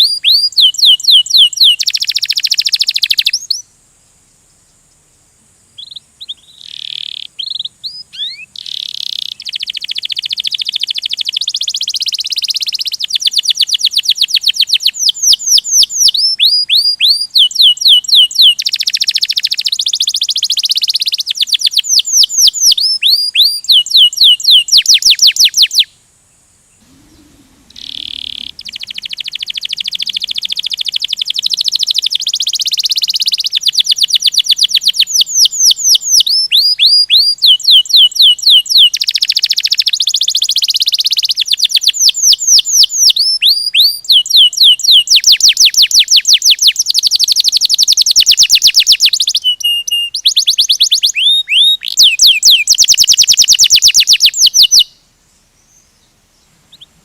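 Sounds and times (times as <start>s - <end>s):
canary singing trills: 0.0s - 3.7s, 5.8s - 26.0s, 26.7s - 55.0s, 55.6s - 57.0s.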